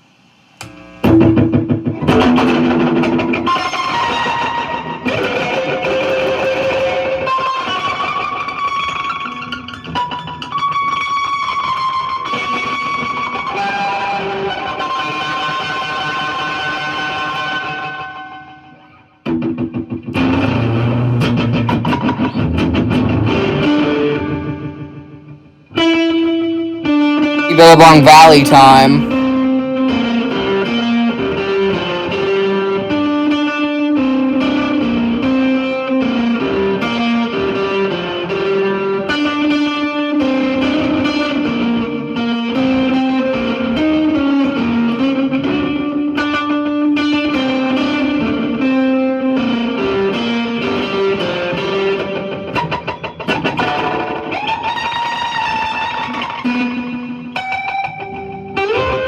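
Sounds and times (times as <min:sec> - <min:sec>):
electric guitar bending notes: 0:01.0 - 0:06.8
electric guitar riff with delay echoes: 0:27.5 - 0:29.6.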